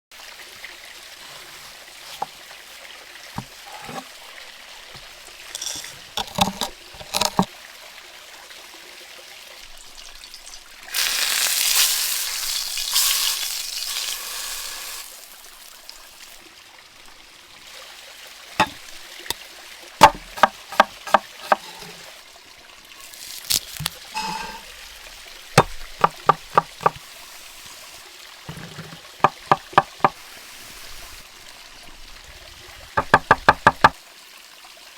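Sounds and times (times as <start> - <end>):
knife chopping on cutting board: 5.6 - 7.5, 18.6 - 18.8, 20.0 - 22.0, 23.7 - 24.6, 25.6 - 27.0, 28.5 - 30.2, 33.0 - 33.9
food frying sizzle: 9.6 - 18.8, 21.0 - 25.8.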